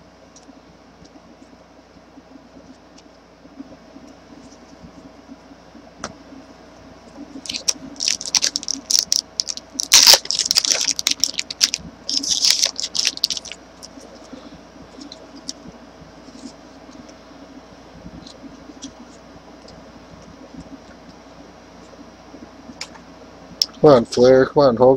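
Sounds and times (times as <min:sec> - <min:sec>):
foil wrapper crinkling and tearing: 0:07.4 - 0:14.0.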